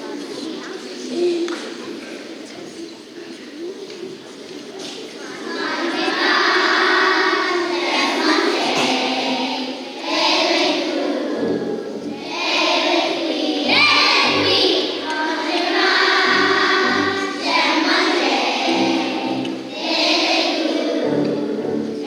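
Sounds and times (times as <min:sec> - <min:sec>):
children singing together: 0:05.2 - 0:22.0.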